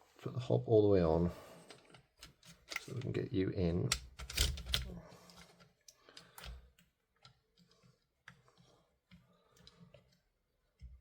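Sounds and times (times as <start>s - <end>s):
small plastic and metal parts clicking: 3.9s - 8.7s.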